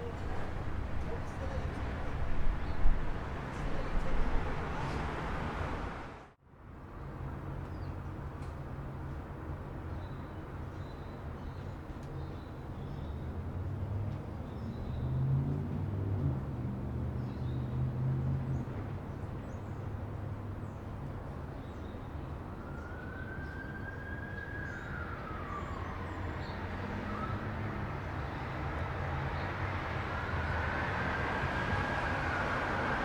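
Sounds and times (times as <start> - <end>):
traffic hum: 0.0 - 6.3, 22.8 - 33.0
distant siren wailing: 22.3 - 33.0.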